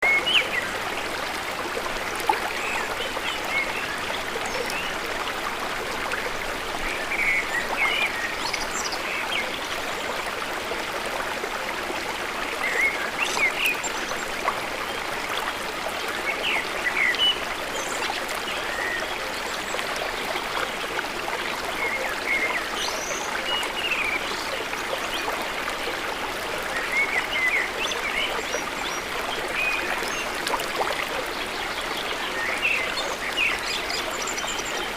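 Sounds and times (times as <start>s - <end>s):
running stream: 0.0s - 34.9s.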